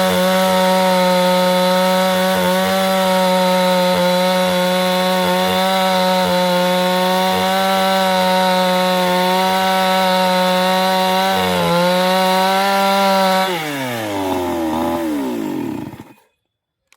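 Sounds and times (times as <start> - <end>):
chainsaw cutting wood: 0.0 - 16.3.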